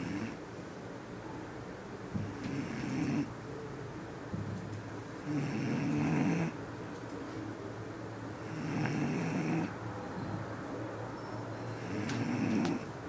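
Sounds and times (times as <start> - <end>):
dog snoring: 0.0 - 0.4, 2.2 - 3.3, 5.2 - 6.6, 8.4 - 9.8, 11.8 - 12.9.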